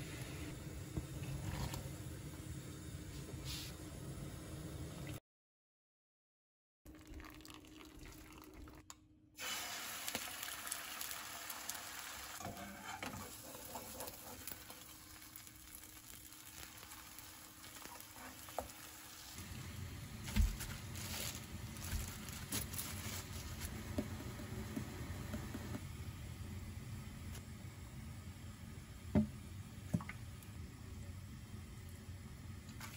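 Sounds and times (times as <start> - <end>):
steady sizzling hiss: 9.4 - 32.9.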